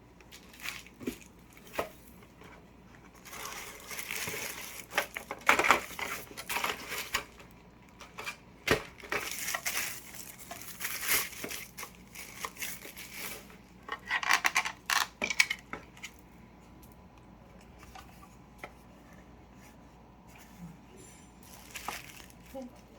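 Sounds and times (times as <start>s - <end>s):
packaging crinkling: 0.2s - 2.2s, 2.9s - 16.2s, 21.4s - 22.9s.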